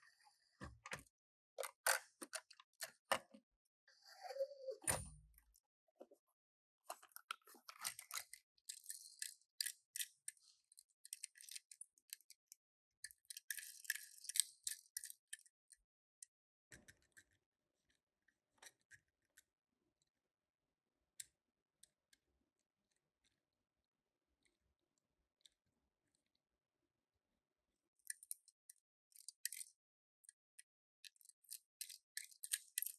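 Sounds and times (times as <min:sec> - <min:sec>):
small handling clicks: 0:28.0 - 0:32.9.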